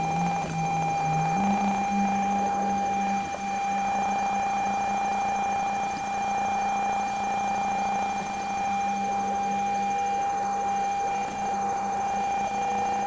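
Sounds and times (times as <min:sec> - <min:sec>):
synthesizer drone: 0:00.0 - 0:03.2
faint high pulsing tone: 0:00.0 - 0:05.4.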